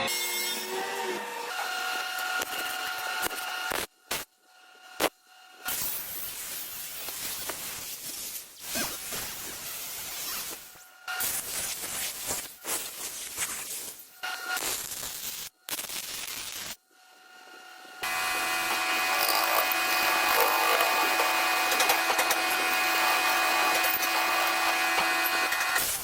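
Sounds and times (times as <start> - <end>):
power tool whining: 0.0 - 3.8, 18.0 - 26.0.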